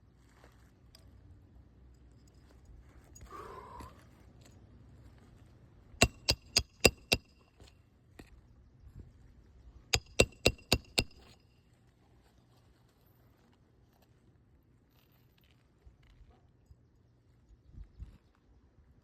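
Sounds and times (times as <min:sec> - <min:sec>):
hammer striking metal: 0:06.0 - 0:07.4, 0:10.0 - 0:11.4.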